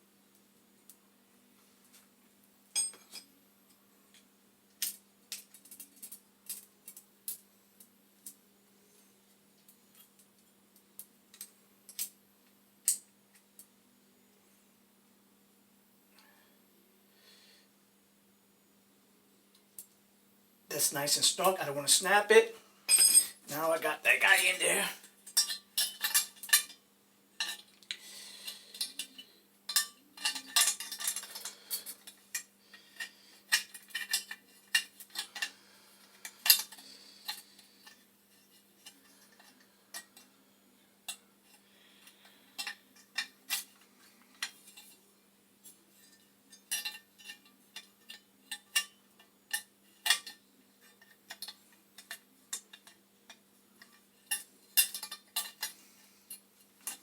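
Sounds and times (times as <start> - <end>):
faint low hum: 0.0 - 57.0
metal tools clicking and clinking: 2.8 - 3.3, 22.9 - 23.4, 25.3 - 26.8, 27.4 - 27.8, 28.4 - 35.6, 36.2 - 40.3, 42.1 - 45.0, 46.0 - 57.0.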